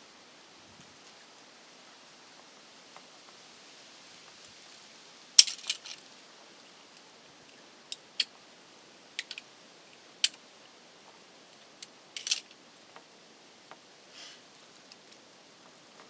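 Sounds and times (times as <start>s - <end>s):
wire strippers clicking and snipping: 5.4s - 6.0s, 9.2s - 9.4s, 12.2s - 12.5s.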